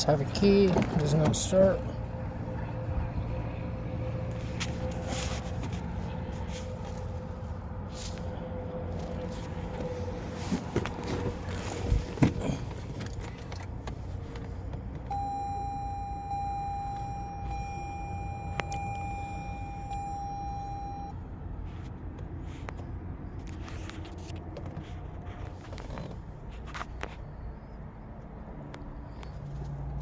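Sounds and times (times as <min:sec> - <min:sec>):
car electronic warning tone: 0:15.1 - 0:21.2.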